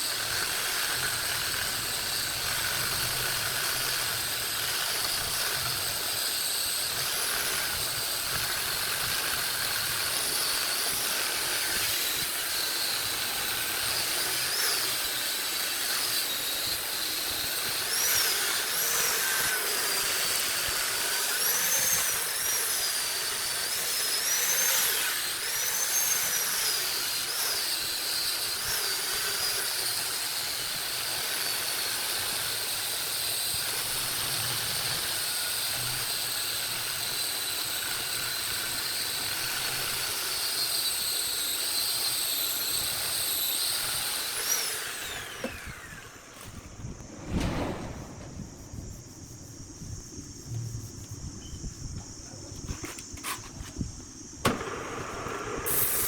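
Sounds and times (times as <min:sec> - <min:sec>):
cutting tool whine on wood: 0:00.0 - 0:46.9
wood lathe hissing: 0:33.1 - 0:46.7.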